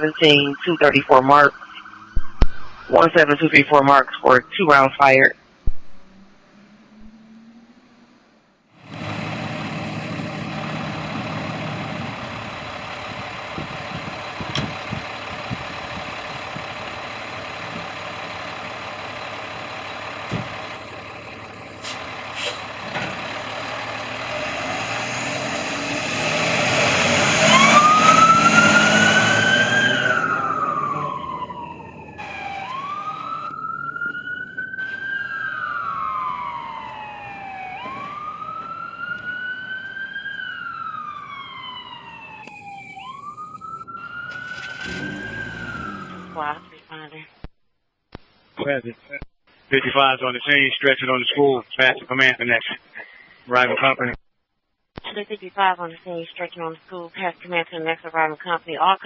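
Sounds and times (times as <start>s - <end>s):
fire engine running: 0.0s - 4.4s, 8.8s - 46.8s
electronic siren wailing: 0.0s - 4.5s, 6.0s - 8.1s, 9.5s - 10.6s, 11.6s - 24.6s, 25.8s - 46.8s.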